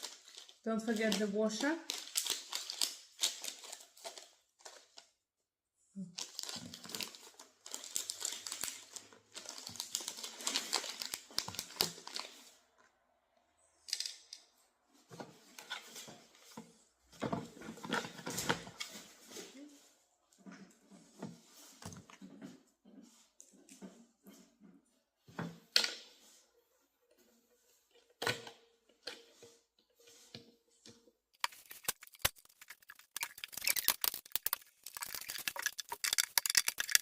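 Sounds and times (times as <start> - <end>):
crinkly rustling: 0.0 - 5.1, 6.2 - 12.6, 31.4 - 37.0.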